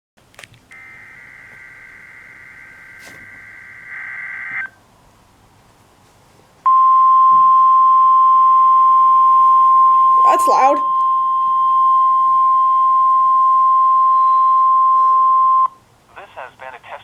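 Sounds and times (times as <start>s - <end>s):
faint radio hiss: 0.7s - 6.6s, 15.7s - 17.0s
buzzy digital data burst: 0.8s - 4.7s.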